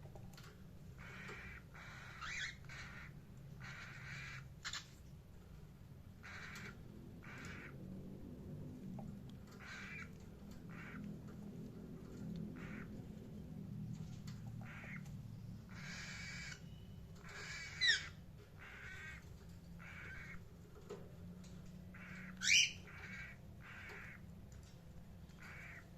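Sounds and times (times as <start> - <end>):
steady low hum: 0.0 - 25.9
parakeet harsh calls: 1.0 - 5.0, 6.2 - 7.8, 9.6 - 11.0, 12.6 - 13.0, 14.6 - 15.1, 15.7 - 20.5, 21.9 - 24.3, 25.2 - 25.9
parakeet shrill screeches: 1.1 - 4.9, 17.2 - 19.2, 22.0 - 24.2.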